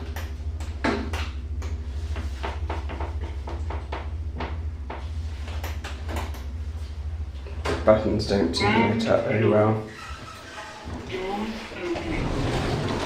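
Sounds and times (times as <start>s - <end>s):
faint knocks and clatter: 0.0s - 8.0s
lift humming: 0.0s - 13.0s.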